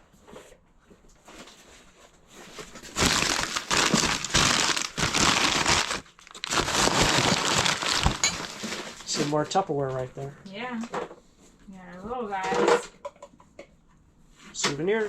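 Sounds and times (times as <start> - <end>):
wrapping material crinkling: 2.5 - 9.3.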